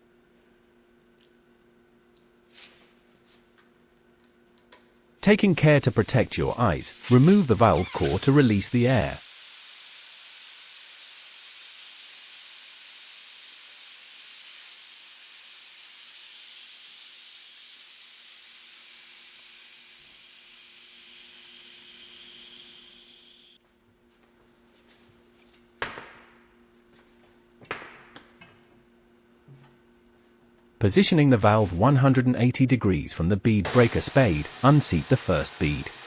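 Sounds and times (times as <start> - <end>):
air hissing out of tyre: 5.2 - 23.6, 33.7 - 36.0.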